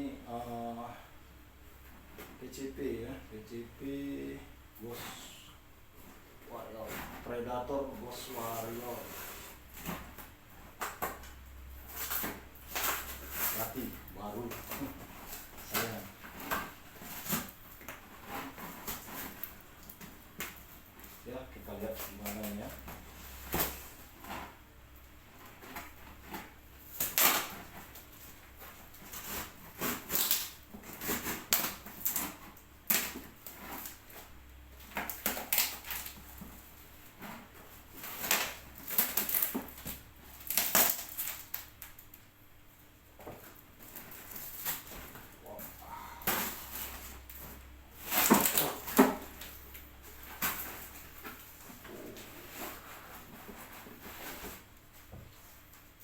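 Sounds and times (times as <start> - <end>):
cardboard package being opened: 34.8 - 36.6, 37.2 - 42.0, 43.8 - 54.8.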